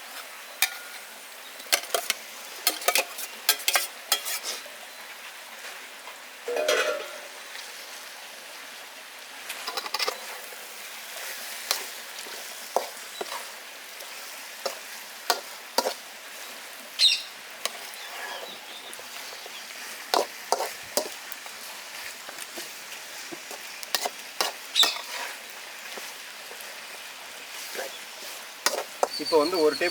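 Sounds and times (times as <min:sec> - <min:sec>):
chicken sizzling in a pan: 0:00.0 - 0:29.9
spatula scraping and knocking pan: 0:01.7 - 0:04.6, 0:06.5 - 0:07.3, 0:09.7 - 0:10.4, 0:11.2 - 0:16.0, 0:17.6 - 0:21.2, 0:22.3 - 0:27.0, 0:27.6 - 0:29.4.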